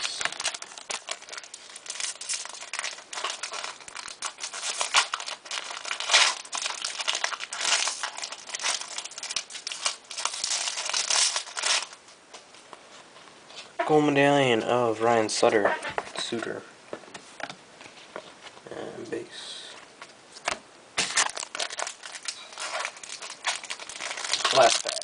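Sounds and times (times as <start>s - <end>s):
plastic wrapper crinkling: 0.0s - 12.0s, 20.4s - 25.0s.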